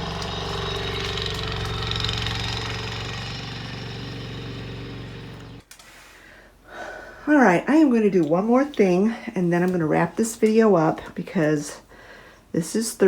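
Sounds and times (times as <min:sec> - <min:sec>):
tractor engine running: 0:00.0 - 0:05.7.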